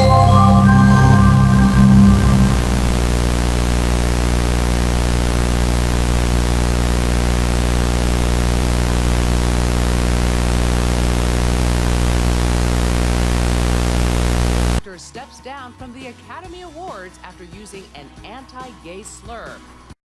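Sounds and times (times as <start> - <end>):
low buzzing hum: 0.0 - 14.8
static hiss: 0.0 - 14.8.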